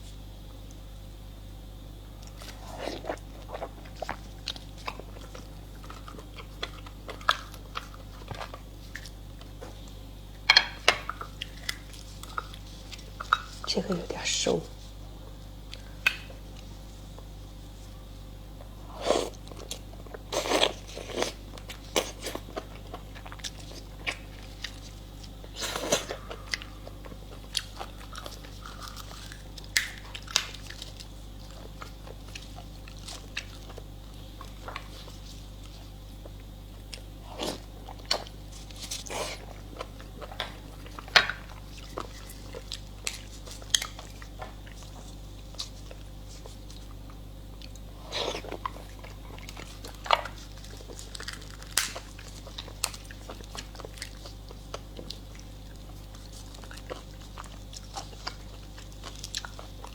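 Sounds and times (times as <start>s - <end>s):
steady low hum: 0.0s - 59.9s
wet chewing and mouth smacks: 2.2s - 10.0s, 19.1s - 59.9s
crunching bites: 18.6s - 35.2s, 36.2s - 59.9s.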